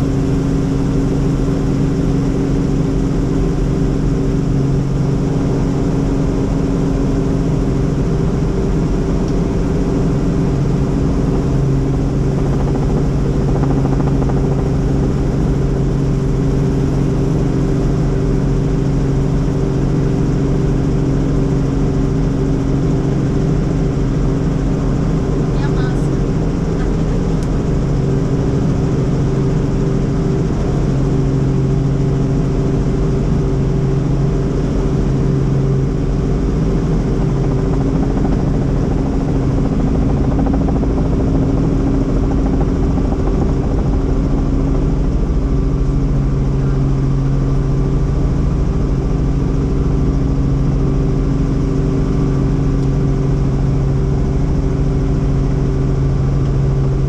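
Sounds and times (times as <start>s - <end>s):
helicopter running: 0.0s - 57.0s.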